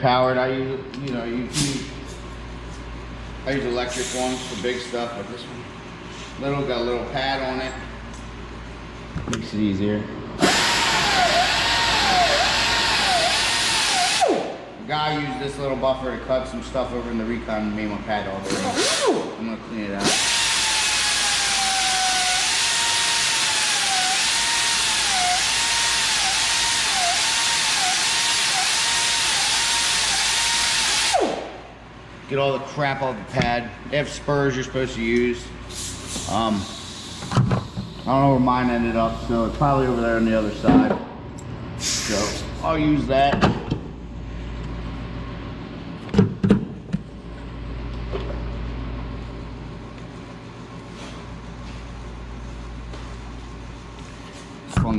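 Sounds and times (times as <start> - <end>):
air-powered buffer whining: 3.5 - 5.3, 10.4 - 14.8, 18.3 - 31.8, 35.4 - 41.0, 41.8 - 43.0
air hiss: 3.9 - 4.8, 35.7 - 38.2, 41.8 - 42.6.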